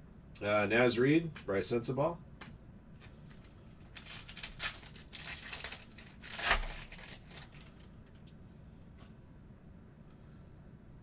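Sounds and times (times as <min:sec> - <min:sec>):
foil wrapper crinkling: 0:03.0 - 0:08.3.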